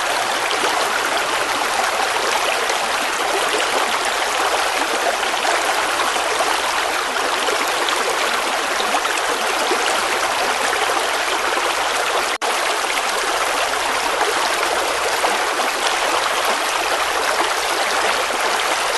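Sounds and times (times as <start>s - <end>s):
river water flowing: 0.0s - 18.9s.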